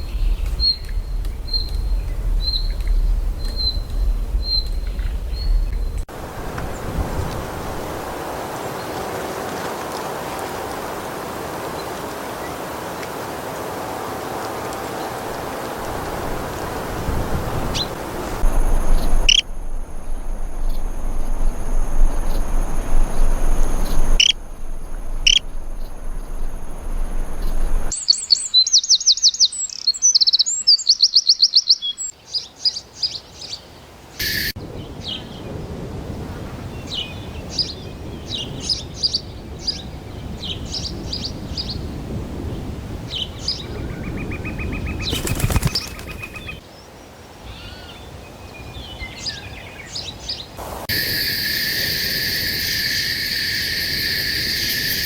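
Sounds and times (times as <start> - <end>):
fast high bird trill: 19.2 - 19.4, 34.2 - 34.6, 44.8 - 46.6, 50.9 - 55.0
short high bird chirps: 34.2 - 34.6.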